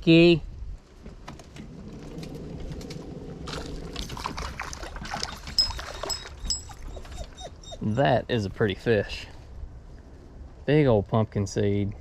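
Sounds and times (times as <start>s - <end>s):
water splashing and sloshing: 1.0s - 7.6s.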